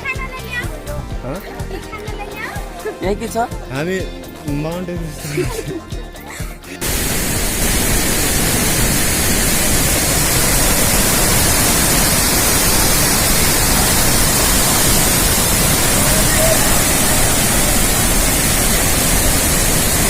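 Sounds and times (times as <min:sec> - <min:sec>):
waterfall rushing: 0:06.8 - 0:20.0.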